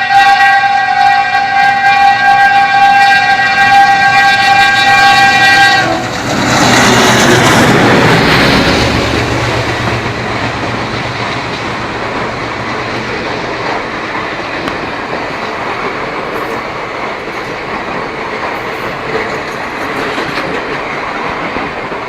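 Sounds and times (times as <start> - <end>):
locomotive air horn blast: 0.0 - 8.8
diesel locomotive passing: 0.0 - 22.0
train wheels clicking over rail joints: 2.8 - 22.0.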